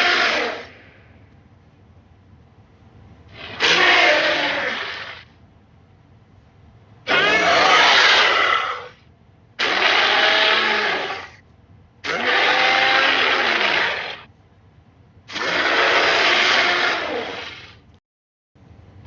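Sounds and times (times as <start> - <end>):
dinosaur roars: 0.0 - 0.8, 3.4 - 5.2, 7.1 - 9.0, 9.6 - 11.4, 12.0 - 14.3, 15.3 - 17.8.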